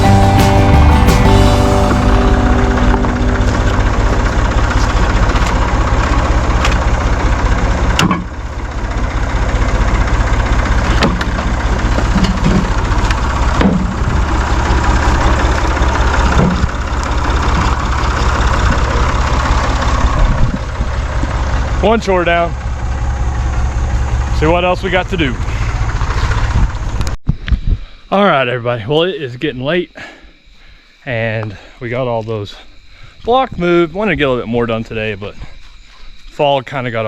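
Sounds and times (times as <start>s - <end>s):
engine idling: 0.0s - 27.2s
sharp knocks: 8.0s - 8.3s, 10.9s - 12.8s, 13.5s - 14.0s.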